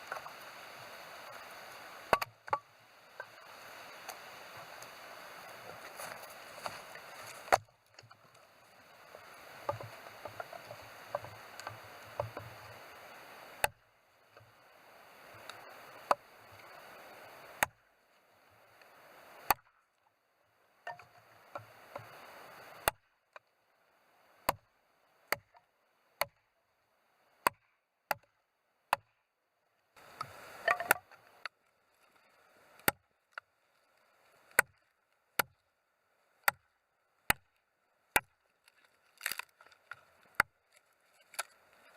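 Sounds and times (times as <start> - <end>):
axe chopping firewood: 2.1 - 2.6, 6.0 - 8.1, 13.6 - 13.8, 19.4 - 19.7, 22.8 - 23.0, 25.3 - 25.6, 26.2 - 26.4, 27.4 - 29.2, 30.2 - 31.1, 32.8 - 33.0, 34.5 - 34.8, 35.4 - 35.6, 36.4 - 36.6, 37.3 - 37.5, 38.1 - 38.4, 40.3 - 40.6
rustling handling noise: 5.6 - 8.5.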